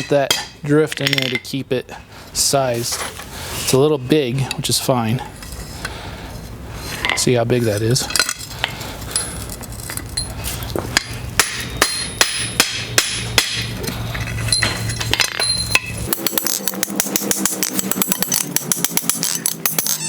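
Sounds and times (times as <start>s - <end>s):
hammer striking steel on anvil: 11.0s - 13.8s, 14.5s - 20.0s.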